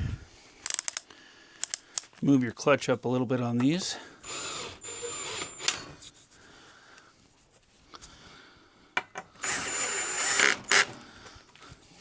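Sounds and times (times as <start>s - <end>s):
drill click: 0.6s - 2.1s, 4.3s - 6.0s, 9.4s - 11.0s
cordless drill whining: 4.2s - 6.1s, 9.4s - 11.0s.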